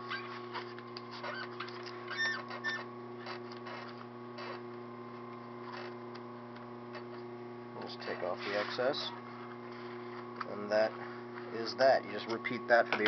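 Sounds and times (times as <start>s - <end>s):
short squeaks: 0.0s - 4.6s.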